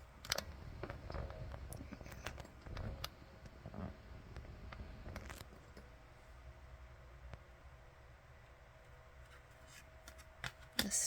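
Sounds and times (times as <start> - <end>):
cards sliding and rustling: 9.2 - 10.8.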